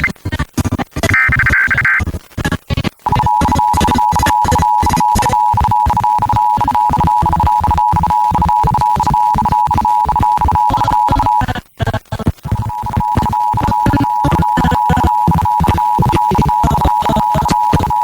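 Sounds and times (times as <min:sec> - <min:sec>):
two-tone alert signal: 0:03.1 - 0:11.4, 0:12.6 - 0:18.0.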